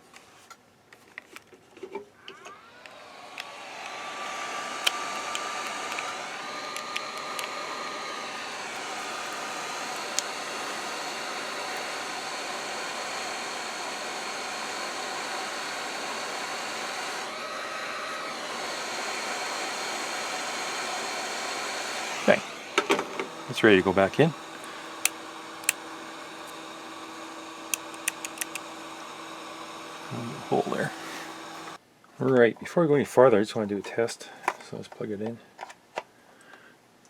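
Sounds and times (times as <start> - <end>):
heat gun blowing: 2.2 - 31.8.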